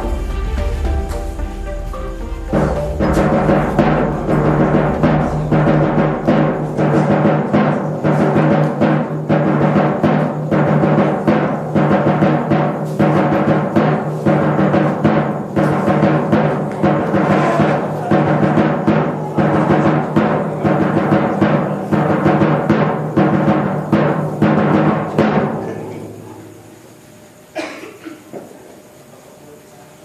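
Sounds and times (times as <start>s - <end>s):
gamelan music: 0.0s - 7.6s.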